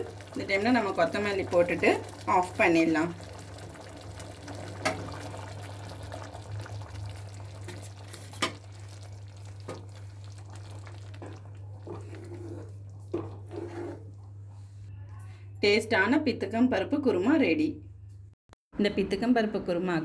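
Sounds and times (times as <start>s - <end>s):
pot bubbling at the boil: 0.0s - 14.8s
spoon stirring pot: 7.6s - 14.6s.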